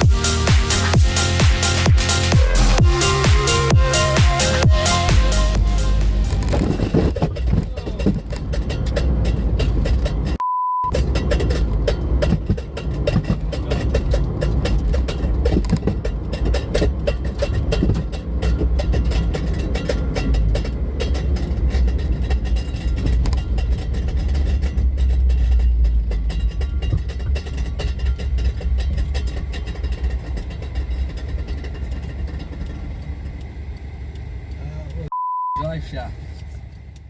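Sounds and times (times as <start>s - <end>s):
buffeting and rattle: 0.0s - 10.4s, 11.0s - 35.0s
car rumbling on the move: 0.0s - 35.1s
censor bleep: 10.4s - 11.0s, 35.1s - 35.7s.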